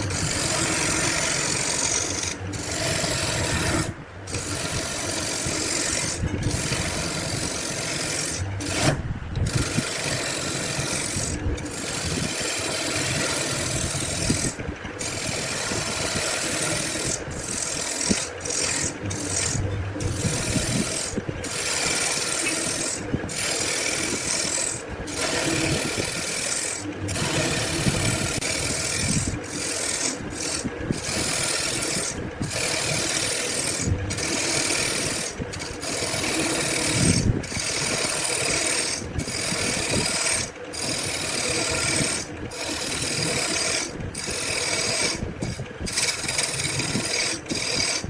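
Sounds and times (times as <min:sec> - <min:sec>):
abrasive tool rasping on wood: 0:00.0 - 0:48.0.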